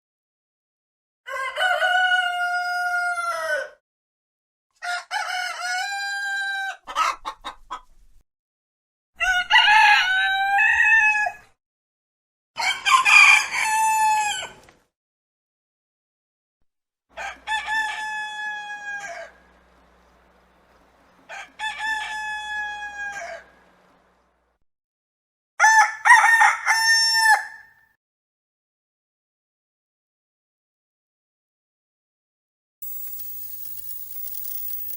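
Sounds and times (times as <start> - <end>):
rooster crowing: 1.3 - 3.8, 4.8 - 6.8, 9.2 - 11.4, 12.6 - 14.5, 17.2 - 19.4, 21.3 - 23.6, 25.6 - 27.7.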